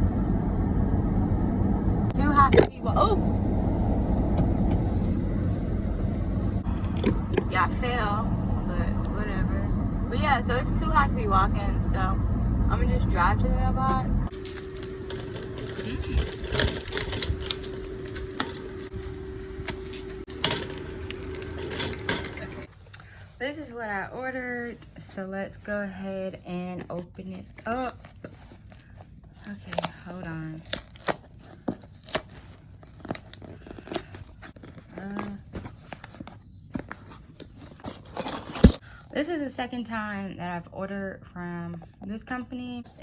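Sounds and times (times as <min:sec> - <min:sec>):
car interior hum: 0:00.0 - 0:21.5
keys jangling and clicking: 0:14.3 - 0:19.0, 0:20.3 - 0:22.7
packaging tearing and crinkling: 0:30.6 - 0:34.8.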